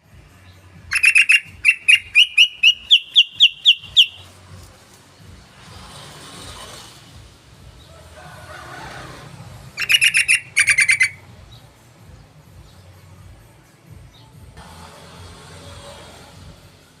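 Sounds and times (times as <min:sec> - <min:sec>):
bulbul chattering call: 0:00.9 - 0:04.3, 0:09.8 - 0:11.2.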